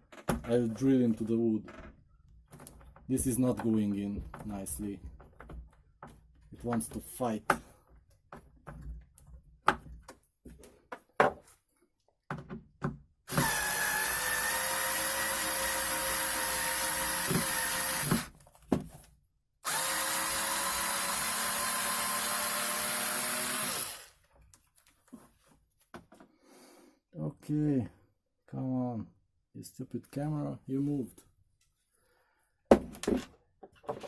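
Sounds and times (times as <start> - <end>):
electric drill boring into wood: 13.3 - 18.3, 19.6 - 24.2.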